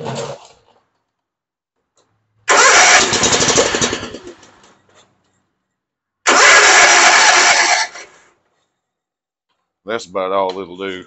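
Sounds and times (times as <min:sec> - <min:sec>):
mower engine cranking: 0:02.5 - 0:04.7, 0:06.3 - 0:08.2.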